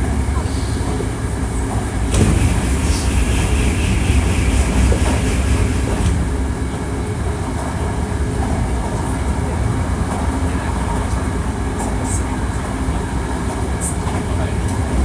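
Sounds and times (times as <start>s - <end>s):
train wheels rumbling on track: 0.0s - 15.0s.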